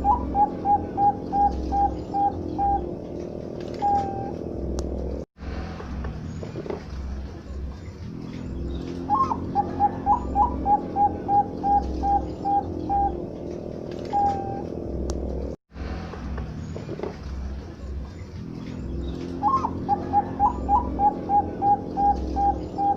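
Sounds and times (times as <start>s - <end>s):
dove cooing: 0.0s - 4.4s, 9.1s - 14.7s, 19.4s - 22.9s.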